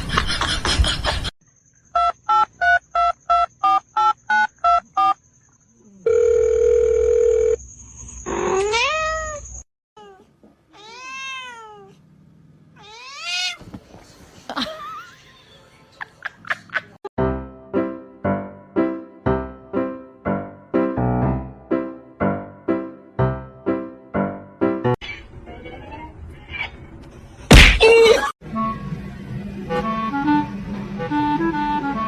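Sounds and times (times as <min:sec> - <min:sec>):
cat meowing: 0:08.5 - 0:09.4, 0:10.0 - 0:12.0, 0:12.8 - 0:13.6, 0:25.0 - 0:26.7.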